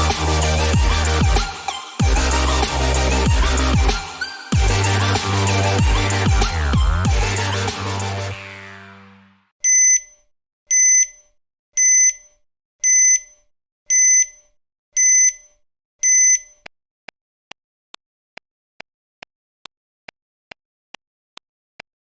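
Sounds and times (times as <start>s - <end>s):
timer beeping: 9.6s - 11.2s, 11.8s - 14.4s, 15.0s - 16.6s.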